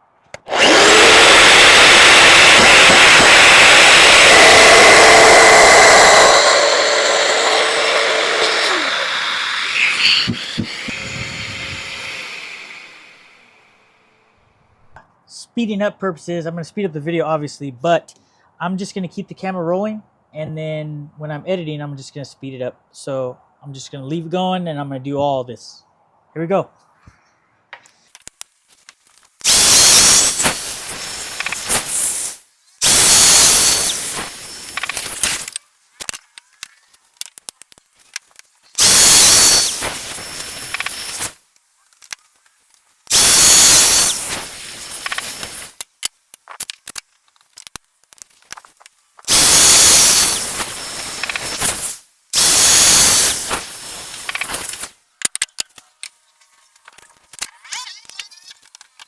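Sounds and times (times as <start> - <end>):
power joiner cutting wood: 0.4 - 13.5, 38.8 - 41.2.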